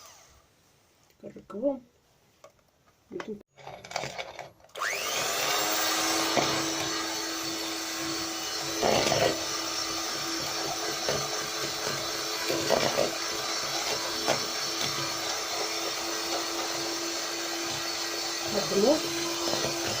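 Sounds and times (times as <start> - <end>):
electric hand mixer whining: 0.0 - 0.4, 4.7 - 20.0
mixer beaters rattling: 5.8 - 20.0.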